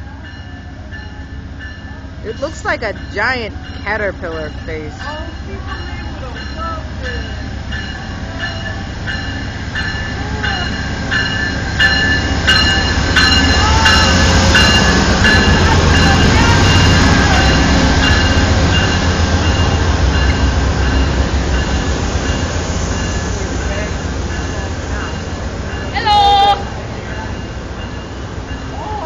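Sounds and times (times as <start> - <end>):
train rumble: 0.0 - 29.0.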